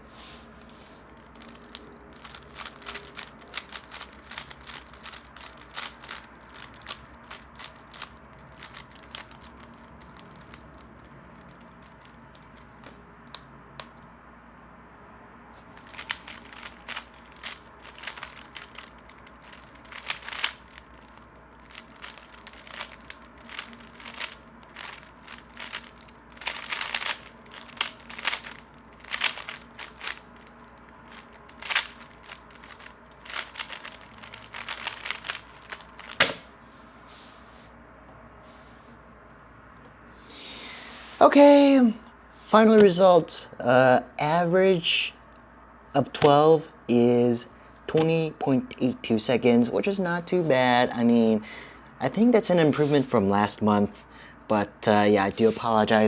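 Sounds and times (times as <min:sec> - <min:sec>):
puzzle cube clicking turns: 0:00.5 - 0:14.0, 0:15.6 - 0:36.4.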